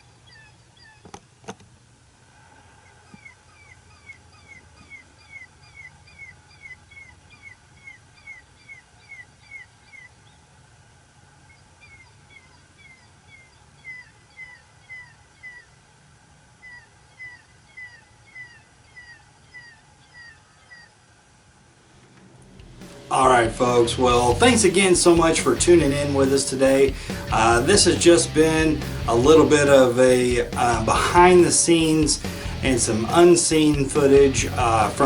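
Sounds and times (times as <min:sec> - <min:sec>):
high-pitched chirping call: 0:11.5 - 0:15.8, 0:16.6 - 0:20.9.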